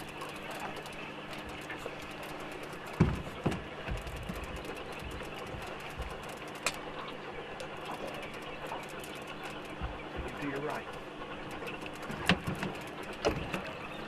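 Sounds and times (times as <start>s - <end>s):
boat motor humming: 0.0s - 14.0s
dull thuds: 2.9s - 6.2s, 9.8s - 10.4s.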